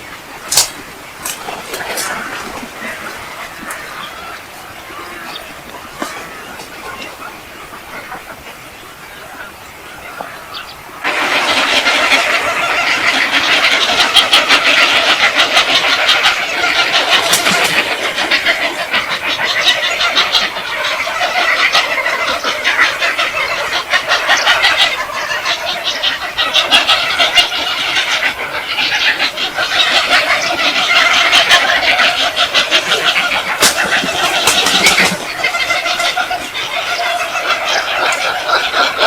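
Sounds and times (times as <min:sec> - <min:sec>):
bird squawks: 0:00.0 - 0:39.0
flock of birds calling and chattering: 0:00.0 - 0:39.0.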